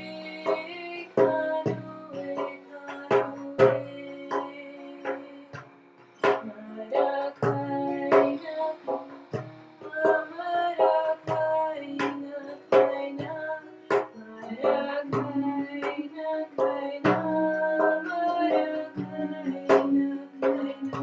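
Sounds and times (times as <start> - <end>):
strummed guitar chords: 0.0 - 21.0
woman singing: 0.0 - 21.0.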